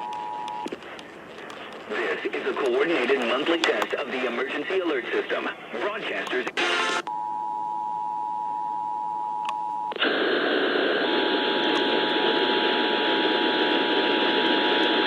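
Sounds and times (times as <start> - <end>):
radio static hiss: 0.6 - 7.1, 10.0 - 15.0.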